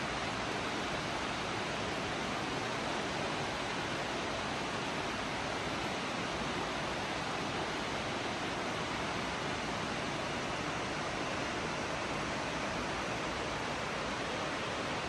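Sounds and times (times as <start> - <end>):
waterfall roaring: 0.0 - 15.0.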